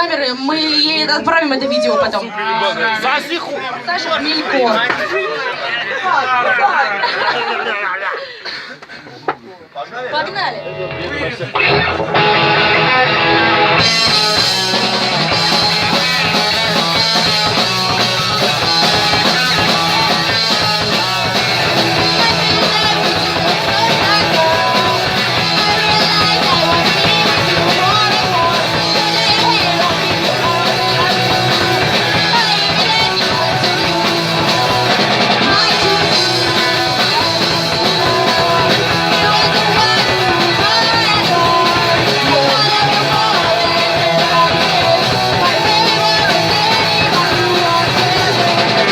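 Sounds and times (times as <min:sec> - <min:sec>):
punk rock band playing live: 0:10.2 - 0:48.9.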